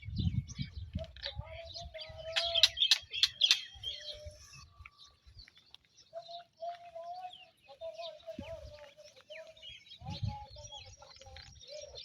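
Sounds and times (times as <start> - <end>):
birds chirping: 0.0 - 12.0.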